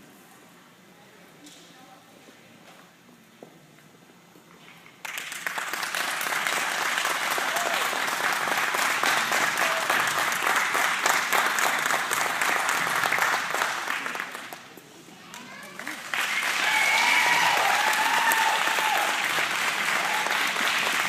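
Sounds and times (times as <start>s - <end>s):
audience applause: 5.0s - 21.0s.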